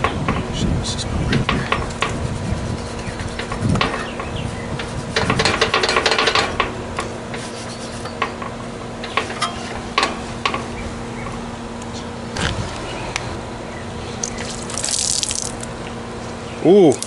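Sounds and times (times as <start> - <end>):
hand scraping metal parts: 1.3 - 13.4.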